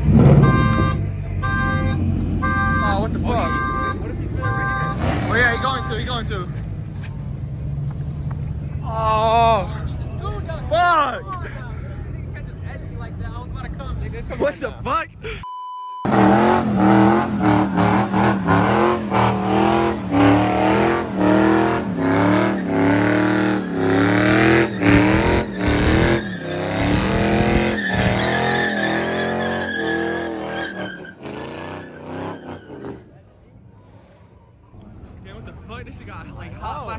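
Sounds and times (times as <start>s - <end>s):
tyres squealing: 0.0s - 7.2s, 16.1s - 33.0s
car engine at high revs: 0.0s - 14.0s, 16.1s - 33.0s.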